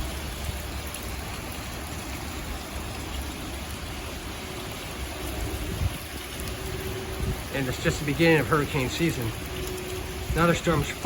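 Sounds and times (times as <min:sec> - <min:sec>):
heavy rain pouring: 0:00.0 - 0:11.0
gusting wind on microphone: 0:04.2 - 0:11.0.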